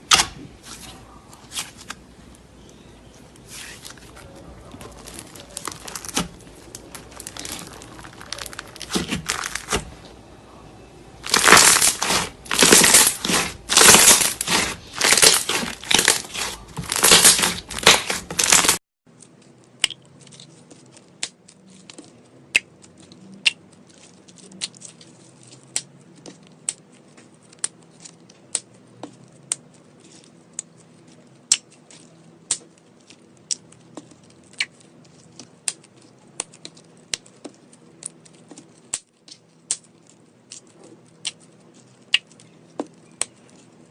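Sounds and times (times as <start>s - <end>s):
slime squeezed crackling: 2.6s - 9.8s, 11.2s - 18.8s.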